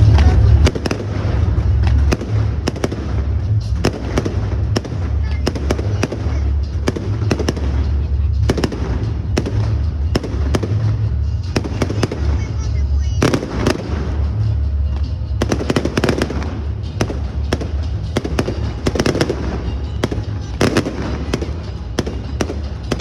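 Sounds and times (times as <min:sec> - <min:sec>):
deep continuous rumble: 0:00.0 - 0:23.0
firework bangs and crackling: 0:00.0 - 0:23.0.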